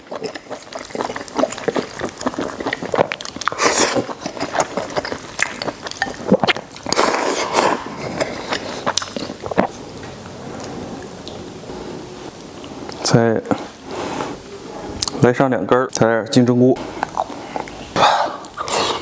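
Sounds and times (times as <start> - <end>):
person chewing with wet mouth clicks: 0.0 - 11.4, 16.9 - 19.0.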